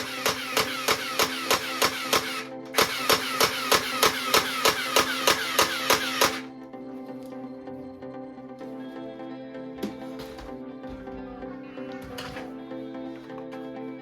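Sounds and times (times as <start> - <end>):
toy gun electronic shots: 0.0 - 6.5.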